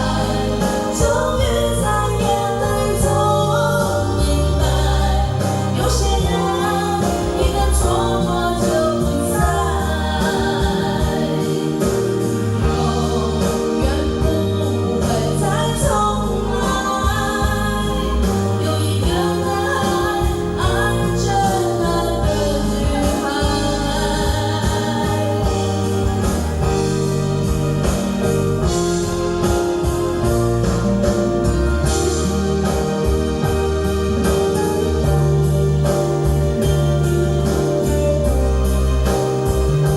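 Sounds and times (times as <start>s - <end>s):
backing track with steady beat: 0.0s - 39.9s
person singing karaoke: 0.0s - 39.9s.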